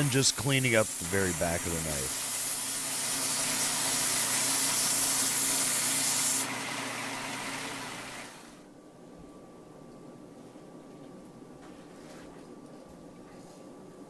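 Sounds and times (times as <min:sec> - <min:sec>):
knife grinding on power grinder: 0:00.9 - 0:08.3.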